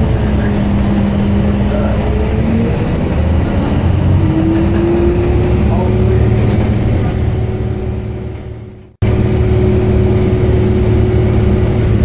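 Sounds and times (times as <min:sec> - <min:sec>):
bus engine humming: 0:00.0 - 0:12.0.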